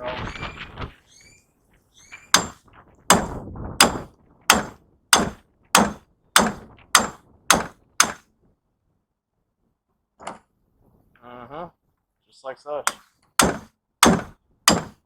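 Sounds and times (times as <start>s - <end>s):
hammer striking chisel: 2.3s - 8.2s, 12.9s - 15.0s.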